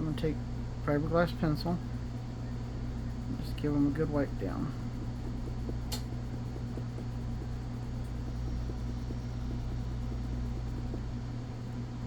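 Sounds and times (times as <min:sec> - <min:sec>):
low mechanical hum: 0:00.0 - 0:12.0
pencil scrubbing scratchy ticks: 0:00.9 - 0:11.2
sharp click: 0:05.9 - 0:06.1.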